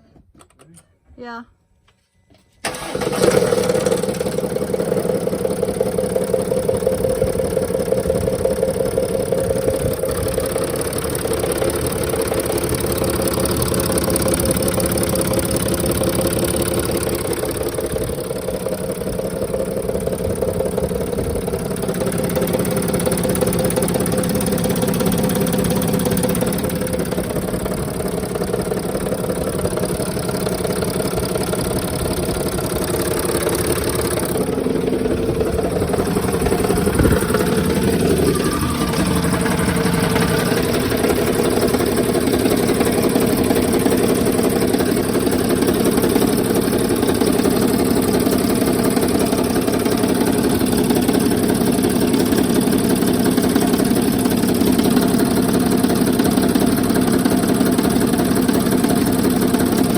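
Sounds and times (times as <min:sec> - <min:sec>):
diesel engine idling: 0:02.6 - 0:59.9
engine knocking and tapping: 0:02.7 - 0:59.9.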